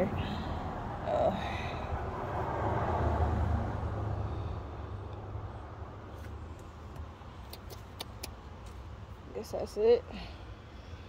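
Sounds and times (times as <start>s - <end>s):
vehicle passing by: 0.0s - 6.7s.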